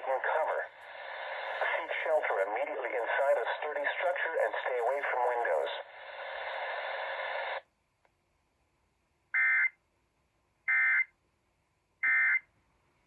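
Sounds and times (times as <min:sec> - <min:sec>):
steady static: 0:00.0 - 0:08.1.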